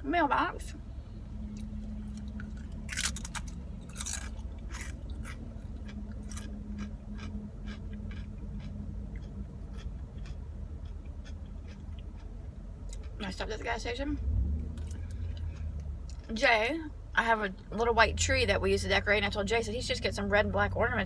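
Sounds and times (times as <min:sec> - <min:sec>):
steady low hum: 0:00.0 - 0:21.0
chewing crisp food: 0:01.4 - 0:16.4.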